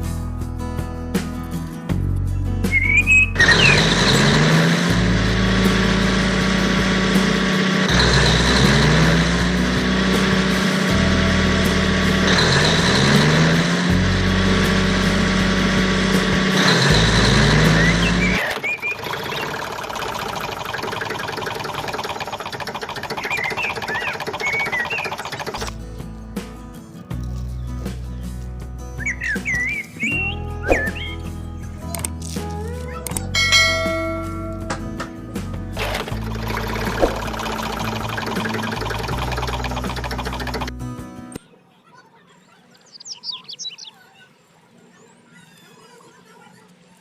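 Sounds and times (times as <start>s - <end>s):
looping background music: 0.0s - 18.4s, 20.4s - 41.4s
bird-like chirps: 2.7s - 3.8s, 17.6s - 19.7s, 23.0s - 25.6s, 29.0s - 31.3s, 41.4s - 46.0s.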